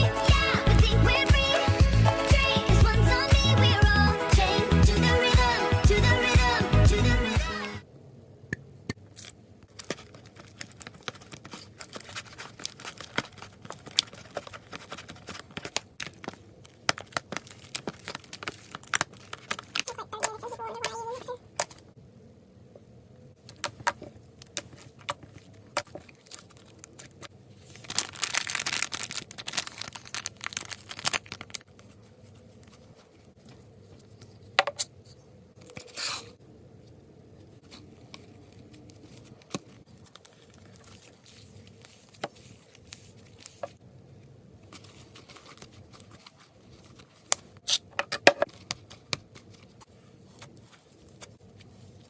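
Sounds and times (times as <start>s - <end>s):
slime crackling and popping: 8.9s - 20.9s, 23.5s - 32.0s.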